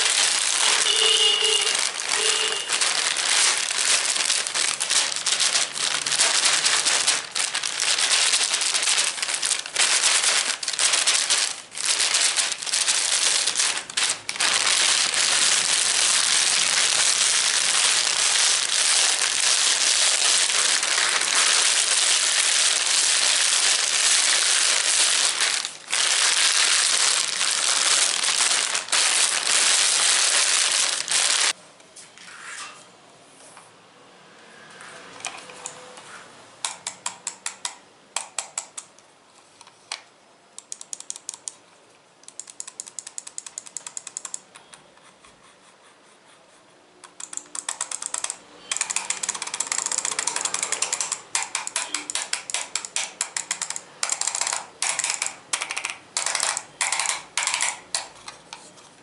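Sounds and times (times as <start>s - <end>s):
crinkling and crackling: 0.0s - 31.6s, 47.2s - 59.0s.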